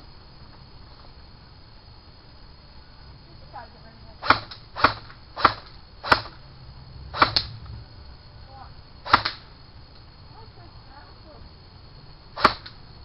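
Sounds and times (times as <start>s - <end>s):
airsoft gunshots: 4.2s - 6.4s, 7.1s - 7.5s, 9.0s - 9.5s, 12.4s - 12.8s.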